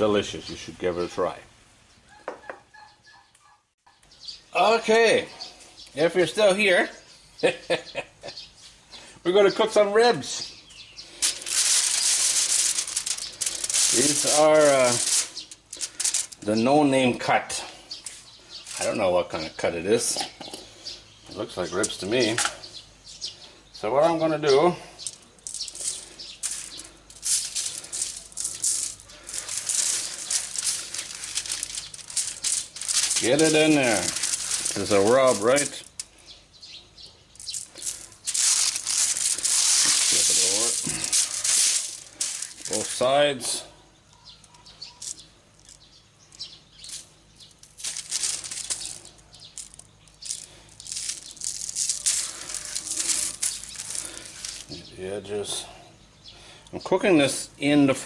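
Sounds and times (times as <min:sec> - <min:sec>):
spice rattling from shaker: 0:11.2 - 0:16.4, 0:25.0 - 0:36.1, 0:37.4 - 0:42.9, 0:46.8 - 0:54.7.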